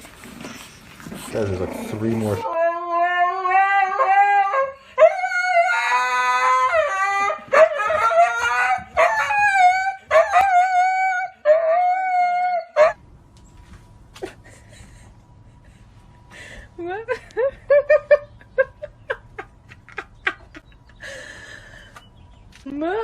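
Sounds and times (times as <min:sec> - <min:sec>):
dog howling: 0:01.9 - 0:13.0.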